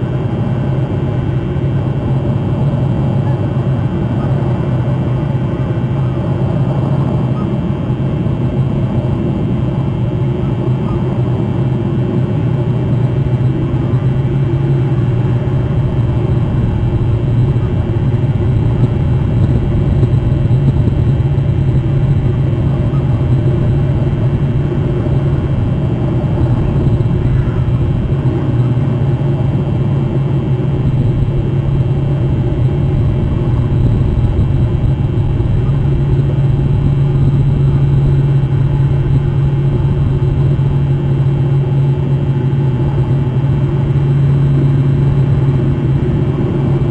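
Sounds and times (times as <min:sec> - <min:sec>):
constant low hum: 0:00.0 - 0:46.9
loud low rumble: 0:11.4 - 0:46.9.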